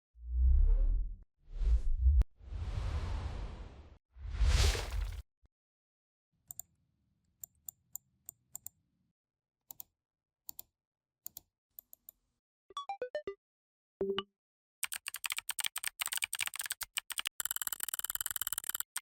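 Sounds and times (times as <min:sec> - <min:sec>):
computer keyboard keystrokes: 0:14.8 - 0:19.0.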